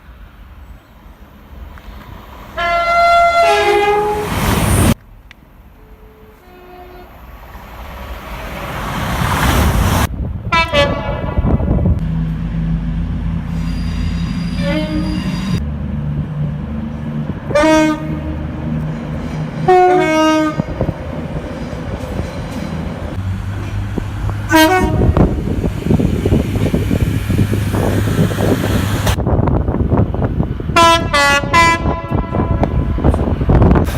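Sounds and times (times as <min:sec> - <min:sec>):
rail and wheel noise: 0:00.0 - 0:33.9
train horn blasts: 0:02.6 - 0:04.5, 0:05.8 - 0:07.3, 0:10.5 - 0:11.9, 0:13.6 - 0:15.6, 0:17.4 - 0:18.7, 0:19.6 - 0:21.0, 0:24.4 - 0:25.5, 0:30.8 - 0:33.2.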